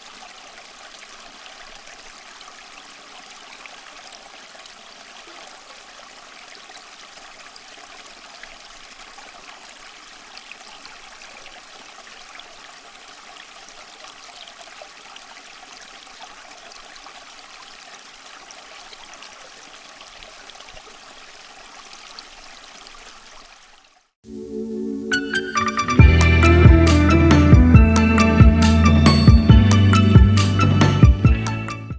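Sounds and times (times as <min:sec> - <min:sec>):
water trickling down fountain: 0:00.0 - 0:24.1
music: 0:24.3 - 0:31.9.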